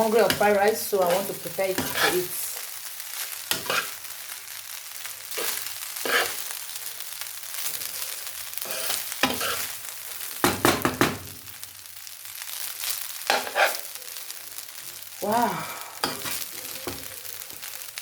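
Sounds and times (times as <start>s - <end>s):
spoon scraping a pan: 0.0s - 2.3s, 3.2s - 4.0s, 5.3s - 6.6s, 7.8s - 9.8s, 13.3s - 13.9s, 16.0s - 17.1s
rice sizzling in a pan: 0.0s - 18.0s.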